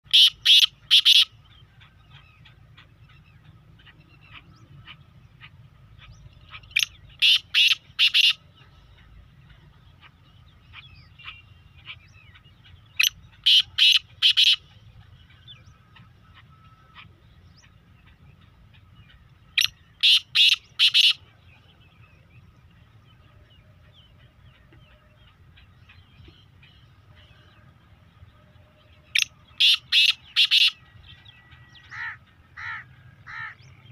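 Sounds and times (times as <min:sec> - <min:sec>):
bird giving harsh calls: 0:00.0 - 0:08.5, 0:10.0 - 0:21.4, 0:29.1 - 0:31.0, 0:31.8 - 0:33.9.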